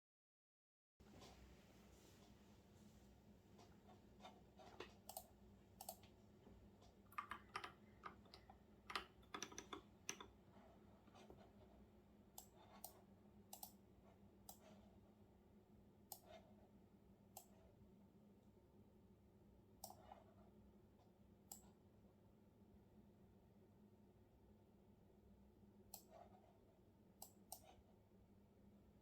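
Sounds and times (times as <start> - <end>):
typing on computer keyboard: 7.1 - 10.3.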